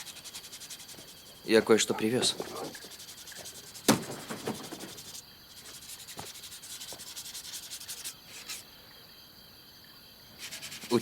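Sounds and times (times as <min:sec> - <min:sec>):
scratchy rubbing: 0:00.0 - 0:01.4, 0:02.2 - 0:08.6, 0:10.4 - 0:11.0.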